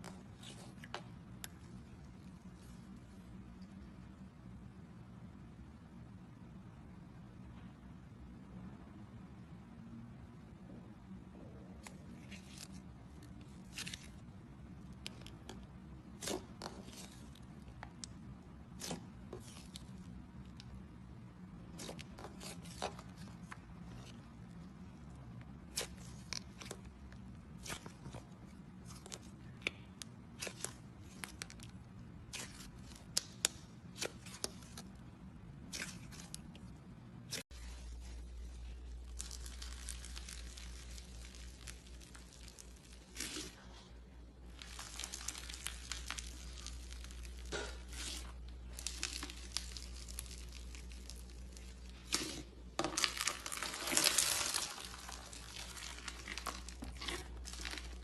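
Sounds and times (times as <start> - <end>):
slime crackling and popping: 38.8 - 43.6, 44.5 - 58.0.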